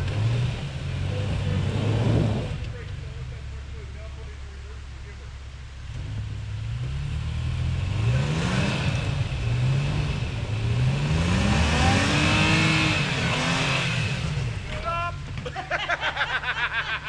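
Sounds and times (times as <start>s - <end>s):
off-road vehicle engine revving: 0.0s - 17.0s.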